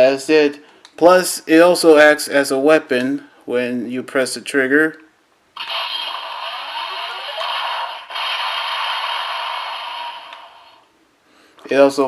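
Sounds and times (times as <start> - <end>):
electronic weapon firing effect: 5.6 - 10.6.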